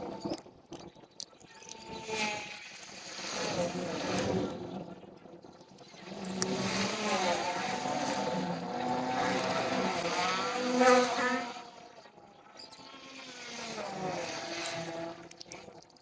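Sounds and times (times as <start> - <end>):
motor running: 6.0 - 12.0.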